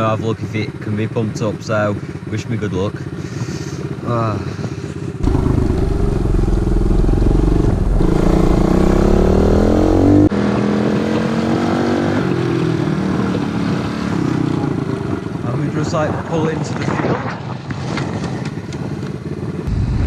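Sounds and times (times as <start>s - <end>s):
pit bike engine revving: 5.2s - 15.5s.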